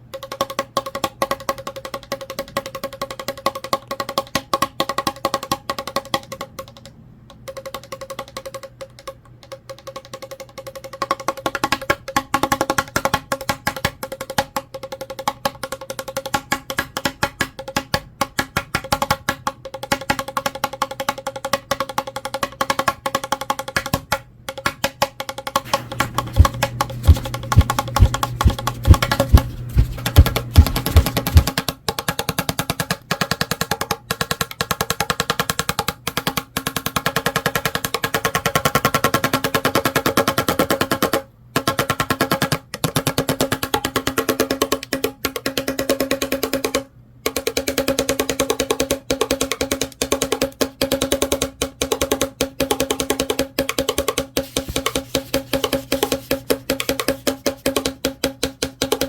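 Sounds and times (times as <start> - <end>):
fan blades clicking on cardboard: 0.0 - 59.0
fan humming: 25.7 - 31.7
deep thumps: 26.3 - 31.5.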